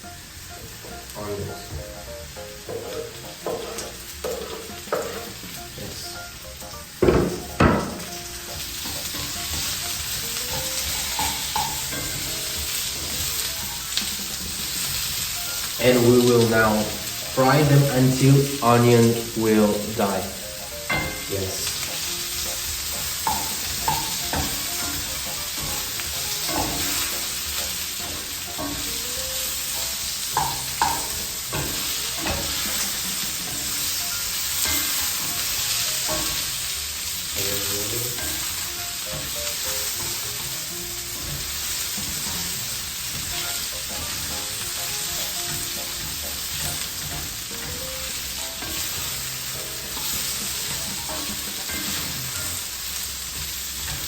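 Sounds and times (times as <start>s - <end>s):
potatoes sizzling in a pan: 0.0s - 54.0s
utensil scraping a pan: 7.3s - 16.1s.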